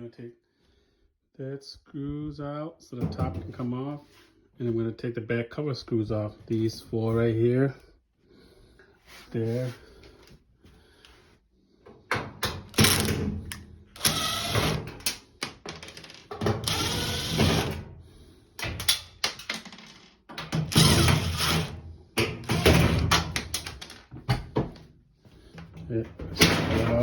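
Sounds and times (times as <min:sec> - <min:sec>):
power screwdriver running: 0:14.0 - 0:14.8, 0:16.6 - 0:17.8, 0:20.7 - 0:21.7.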